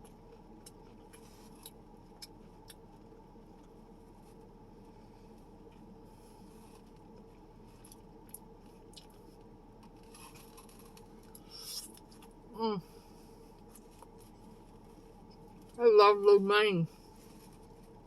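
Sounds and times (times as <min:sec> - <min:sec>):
soft rustle or crunch: 0:00.0 - 0:15.8, 0:16.8 - 0:18.0.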